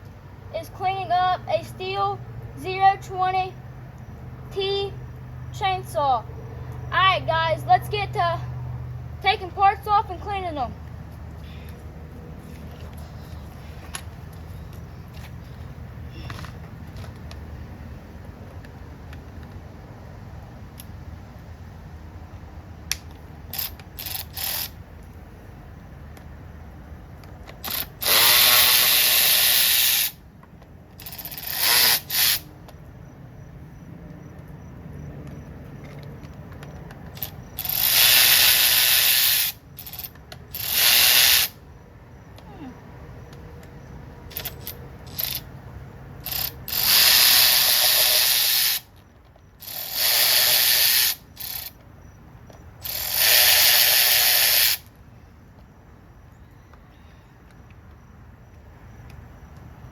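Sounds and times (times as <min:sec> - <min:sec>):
ratchet wrench clicking: 0:22.9 - 0:24.8, 0:27.2 - 0:30.2, 0:31.0 - 0:32.5, 0:35.9 - 0:41.6, 0:44.3 - 0:45.5, 0:46.2 - 0:49.0, 0:49.6 - 0:51.8, 0:52.8 - 0:54.9.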